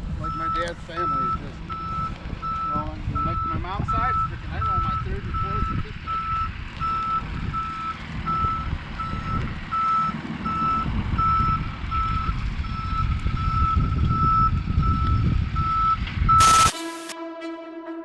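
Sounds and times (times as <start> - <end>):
truck engine rumble: 0.0 - 14.8
truck reversing alarm beeping: 0.0 - 17.8
loud burst of noise: 16.4 - 17.2
brass music: 16.4 - 18.0.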